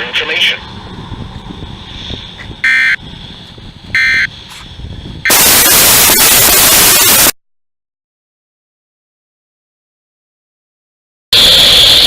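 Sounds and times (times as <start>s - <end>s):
buzzy data tone bursts: 5.2s - 7.4s, 11.4s - 12.0s
harsh static-like noise blast: 5.3s - 7.4s, 11.4s - 12.0s.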